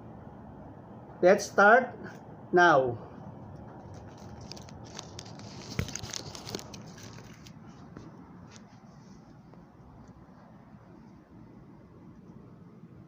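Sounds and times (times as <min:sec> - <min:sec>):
packaging clicking and crinkling: 0:03.8 - 0:08.0.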